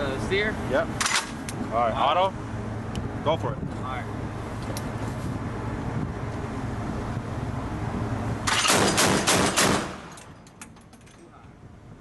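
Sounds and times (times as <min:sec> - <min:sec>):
chain gun firing burst: 0:08.5 - 0:10.2.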